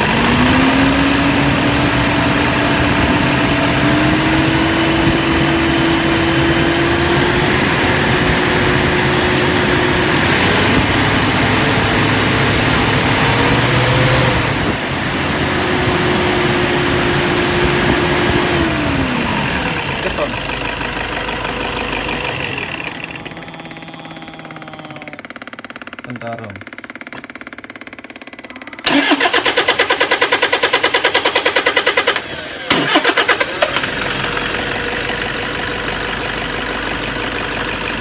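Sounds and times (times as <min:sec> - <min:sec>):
diesel engine turning over: 0:00.0 - 0:38.0.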